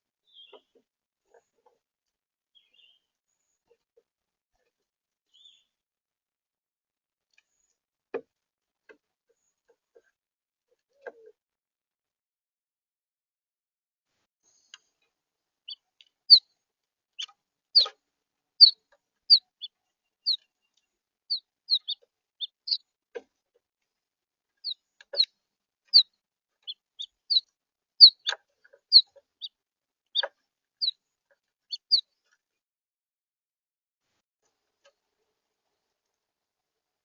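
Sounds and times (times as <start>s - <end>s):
finches chirping: 21.3s - 22.8s, 24.6s - 25.3s, 28.0s - 29.5s, 31.7s - 32.0s.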